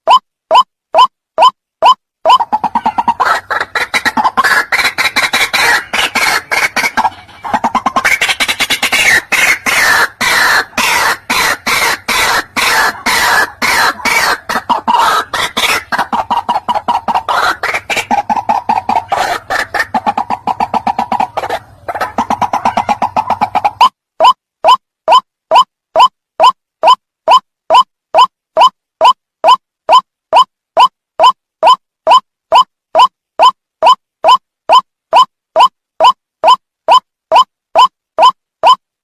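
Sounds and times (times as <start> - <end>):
bird calling rapid notes: 0.0 - 38.8.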